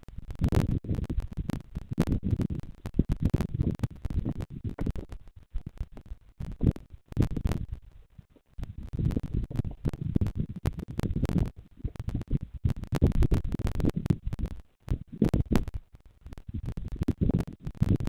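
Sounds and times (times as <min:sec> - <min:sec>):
sharp crackles: 0:00.0 - 0:18.0.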